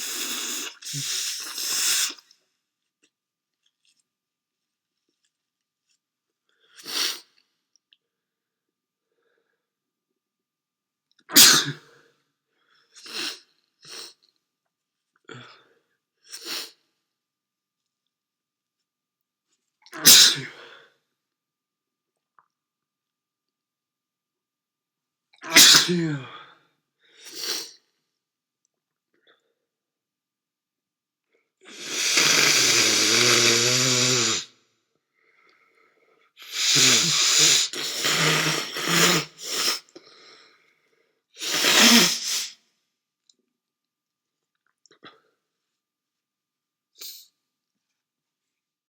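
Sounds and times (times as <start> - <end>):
man sneezing: 11.3 - 11.8, 20.0 - 20.7, 25.4 - 26.4, 36.4 - 39.9, 41.4 - 42.6
man's hissing breath: 36.4 - 40.6, 41.4 - 42.5.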